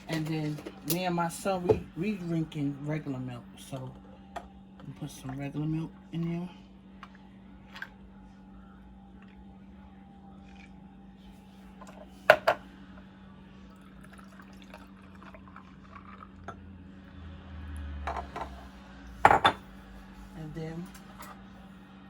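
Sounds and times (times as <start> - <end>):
milk pouring into cup of ice: 10.3 - 10.8, 13.6 - 16.6.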